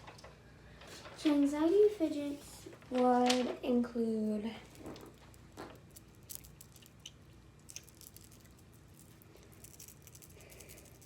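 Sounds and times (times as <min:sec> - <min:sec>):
low room hum: 0:00.0 - 0:11.0
plastic toys clicking and rattling: 0:02.8 - 0:03.7, 0:04.6 - 0:11.0.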